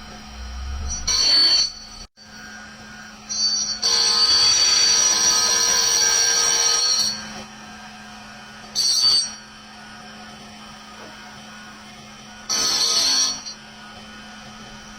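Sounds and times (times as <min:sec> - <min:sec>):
steady machine hum: 0:00.0 - 0:14.9
lathe tool squealing on metal: 0:00.6 - 0:07.4, 0:08.7 - 0:09.5, 0:12.5 - 0:13.7.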